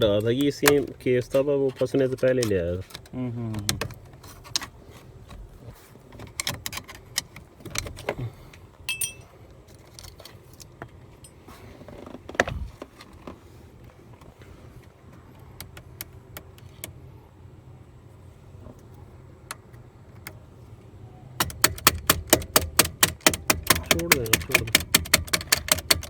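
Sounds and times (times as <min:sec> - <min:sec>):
car keys jangling: 0:08.9 - 0:11.4
key clicking in ignition lock: 0:21.4 - 0:26.0.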